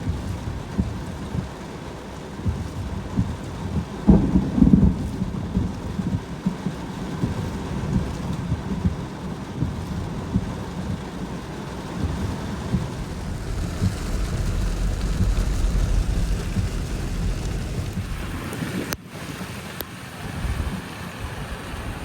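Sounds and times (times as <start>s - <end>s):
low thunder rumble: 0.0s - 19.0s
heavy rain: 0.0s - 22.0s
strong gusting wind: 11.4s - 19.0s
irregular thumps: 11.9s - 18.6s.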